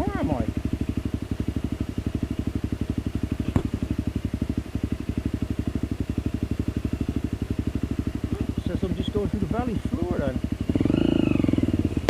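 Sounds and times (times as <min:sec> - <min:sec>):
motorcycle engine chugging: 0:00.0 - 0:12.0
sharp knock: 0:03.4 - 0:03.8.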